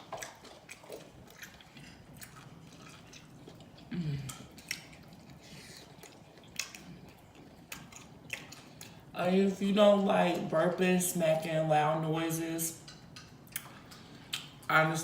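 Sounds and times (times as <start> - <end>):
person chewing with mouth smacks: 0.0 - 9.1, 12.8 - 14.7.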